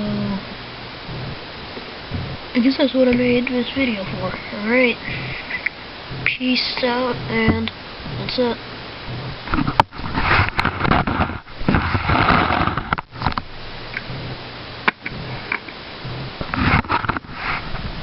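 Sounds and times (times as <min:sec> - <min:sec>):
person sniffing and breathing: 0:04.4 - 0:05.7.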